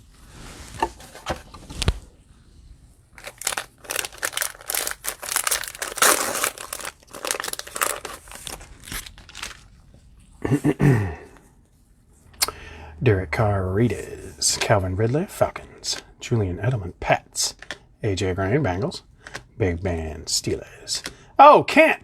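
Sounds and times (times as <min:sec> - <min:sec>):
cellophane wrapper crinkling and tearing: 0:03.1 - 0:09.8.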